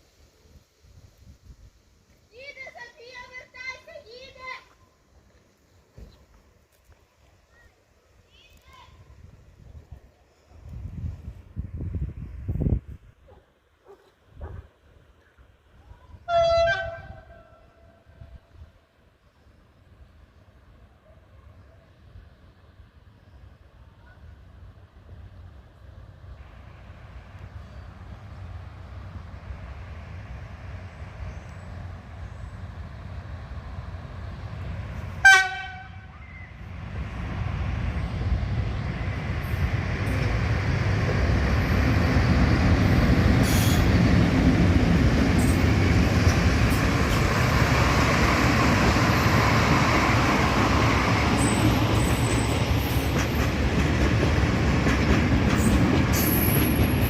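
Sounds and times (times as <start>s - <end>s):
train rumbling on rails: 0.0s - 57.0s
train horn blast: 16.2s - 18.1s, 35.2s - 36.2s.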